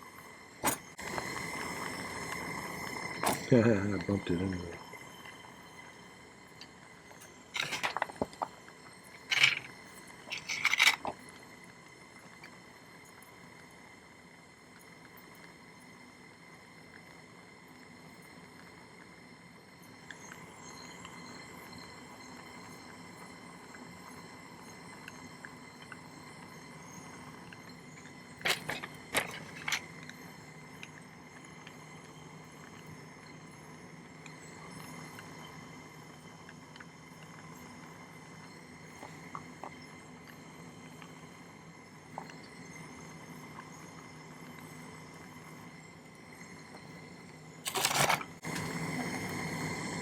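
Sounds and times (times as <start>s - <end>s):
steady background hum: 0.0s - 50.0s
metal tools clinking and scraping: 7.6s - 8.2s, 9.2s - 9.7s, 10.3s - 11.2s, 28.4s - 29.9s, 47.7s - 48.4s.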